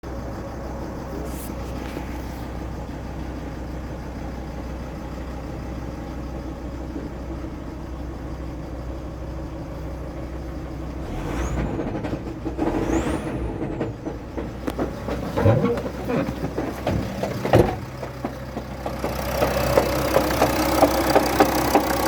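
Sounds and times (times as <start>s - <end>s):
engine running with knock: 11.0s - 22.0s.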